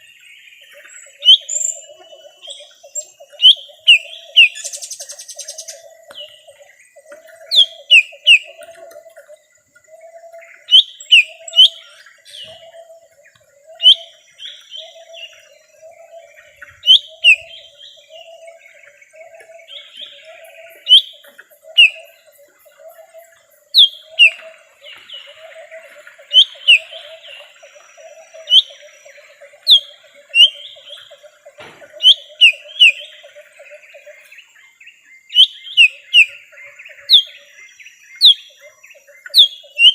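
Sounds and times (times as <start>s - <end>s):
sharp whistled bird notes: 16.7s - 17.7s, 20.8s - 22.1s.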